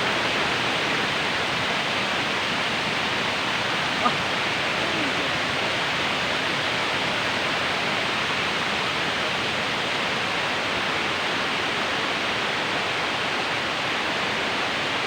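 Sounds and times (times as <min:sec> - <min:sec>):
waterfall roaring: 0:00.0 - 0:05.8.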